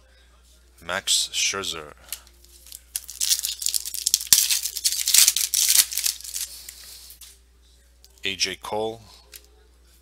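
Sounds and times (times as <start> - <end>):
foil wrapper tearing and crinkling: 2.5 - 6.7.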